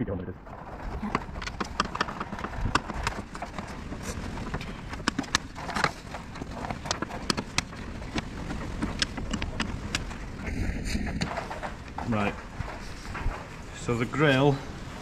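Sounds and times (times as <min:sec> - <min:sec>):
plastic trim clicking and knocking: 0:01.1 - 0:10.3.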